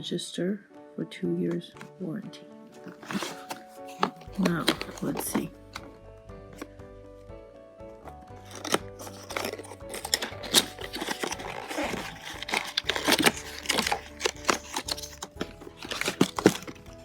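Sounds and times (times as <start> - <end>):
background music sustained notes: 0.0 - 17.0
packaging clicking and crinkling: 2.8 - 5.9, 8.4 - 17.0.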